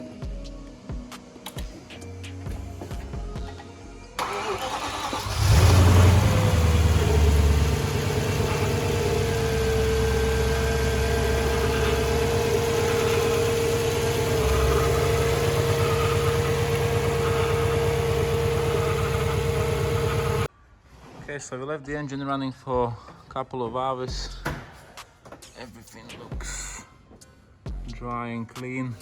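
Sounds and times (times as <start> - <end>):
car engine idling: 4.2 - 20.5.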